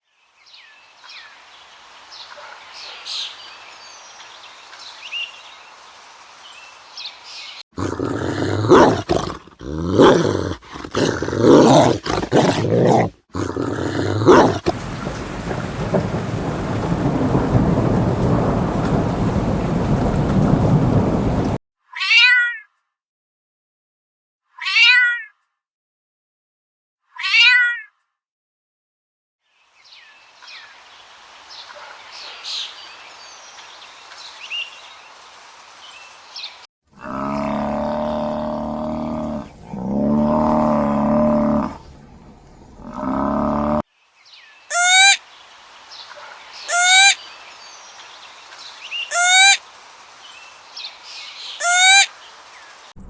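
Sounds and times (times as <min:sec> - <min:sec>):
steady rain: 0:00.3 - 0:12.8, 0:13.8 - 0:21.6, 0:29.9 - 0:53.0
thunder: 0:14.7 - 0:21.6.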